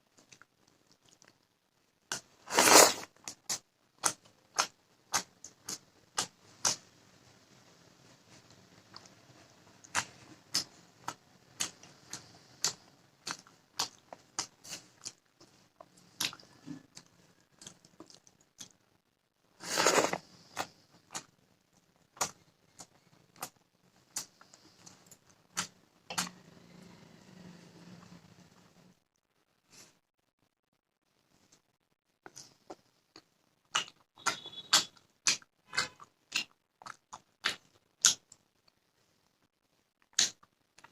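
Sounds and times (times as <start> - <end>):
chewing and lip smacks: 0.2 - 1.4, 9.8 - 18.8, 32.2 - 38.8
loud bite crunch: 2.2 - 5.3, 19.6 - 21.3.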